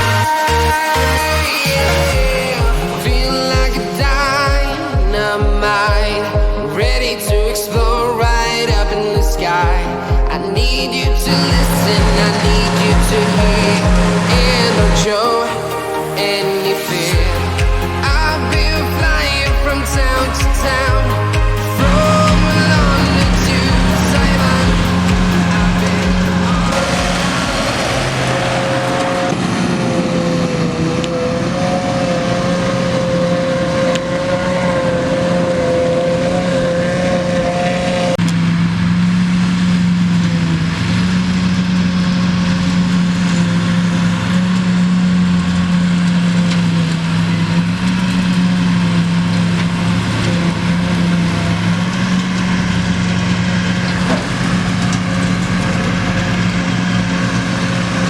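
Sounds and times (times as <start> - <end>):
wavering whine: 11.0 - 58.0
tractor engine under load: 11.3 - 16.3, 17.2 - 58.0.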